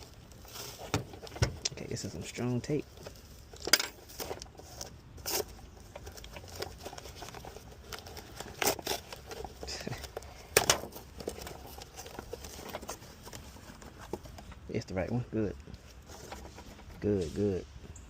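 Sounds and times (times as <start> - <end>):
packaging crinkling and rustling: 0.0 - 14.7
tape ripping: 3.1 - 14.1.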